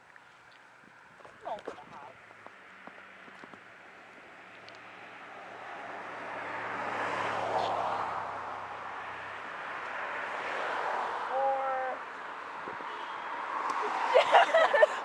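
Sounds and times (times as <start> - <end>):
vehicle approaching: 0.4 - 12.8
car driving past: 2.2 - 11.4.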